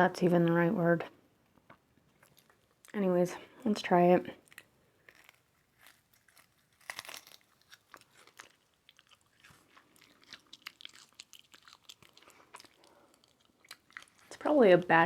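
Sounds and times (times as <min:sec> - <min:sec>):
faint chewing crunches: 0:01.6 - 0:15.0
crunchy snack bite: 0:04.4 - 0:14.4.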